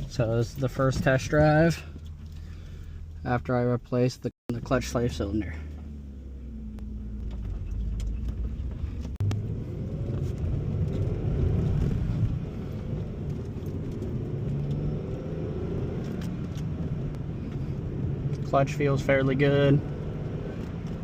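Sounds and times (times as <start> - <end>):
car engine accelerating: 4.5 - 21.0.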